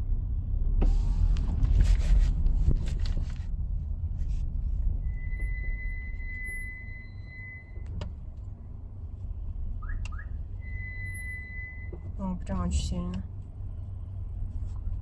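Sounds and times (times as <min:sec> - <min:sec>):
low rumble: 0:00.0 - 0:15.0
high-pitched squeal: 0:05.0 - 0:07.8, 0:09.8 - 0:12.0
car creaks and clicks: 0:07.8 - 0:08.5.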